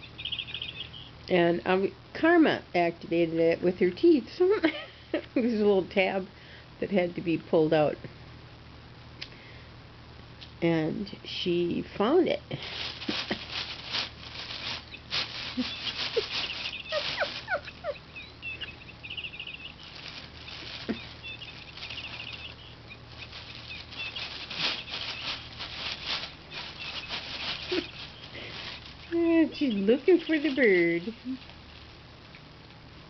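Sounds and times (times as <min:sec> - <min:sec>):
electronic bird chirps: 0:00.0 - 0:01.1, 0:17.6 - 0:19.9, 0:21.0 - 0:23.0
crinkly material crackling: 0:11.8 - 0:33.0.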